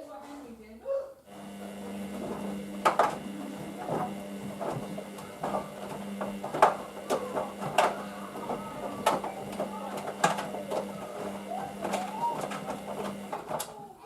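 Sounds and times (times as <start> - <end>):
washing machine motor hum: 1.3 - 14.0.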